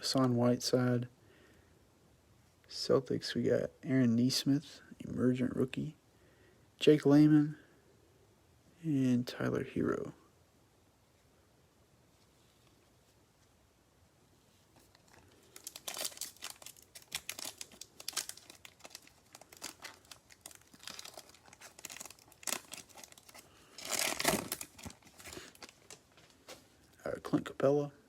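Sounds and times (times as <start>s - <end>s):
wrappers tearing and crinkling: 14.8s - 26.6s.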